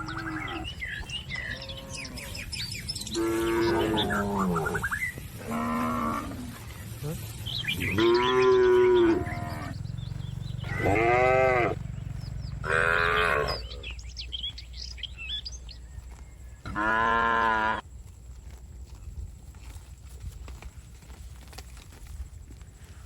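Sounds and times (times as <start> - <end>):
cattle mooing: 0.0 - 9.9, 10.5 - 11.9, 12.6 - 14.0, 16.7 - 17.8.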